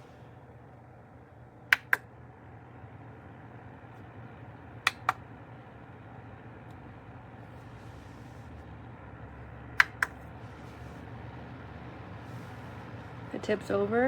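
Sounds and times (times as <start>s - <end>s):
steady low hum: 0.0s - 14.0s
quick sharp clicks: 1.7s - 2.1s, 4.9s - 5.2s.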